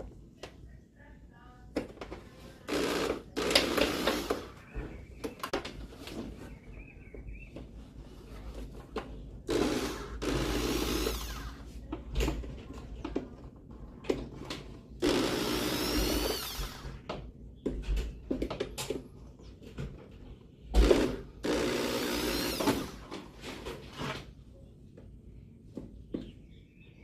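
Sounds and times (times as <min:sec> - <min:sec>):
electric drill driving screws: 0:02.7 - 0:04.6, 0:09.5 - 0:11.7, 0:15.0 - 0:17.0, 0:20.8 - 0:23.1.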